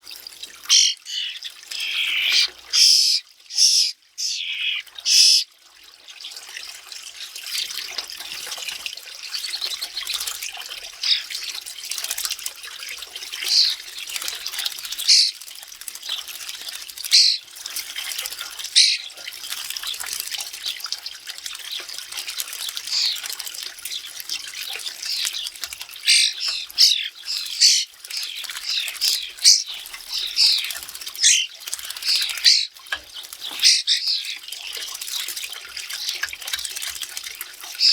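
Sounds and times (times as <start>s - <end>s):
birds splashing water: 0.0s - 37.9s
bird squawks and chirps: 0.7s - 5.5s.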